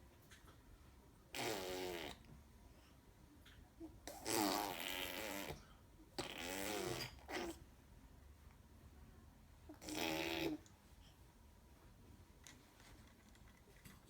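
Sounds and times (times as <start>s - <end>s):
baby blowing raspberries: 1.3s - 2.3s, 4.0s - 5.6s, 6.2s - 7.6s, 9.7s - 10.7s.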